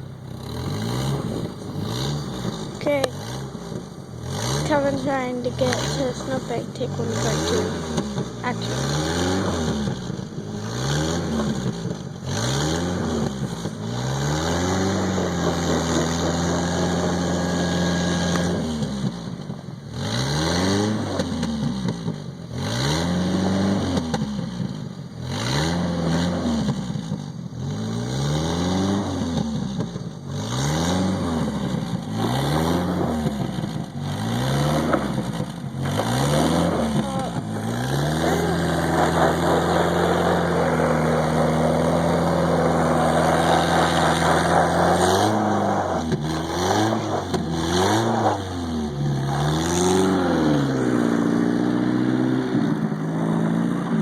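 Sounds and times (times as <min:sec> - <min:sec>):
car engine revving: 0:00.0 - 0:54.0.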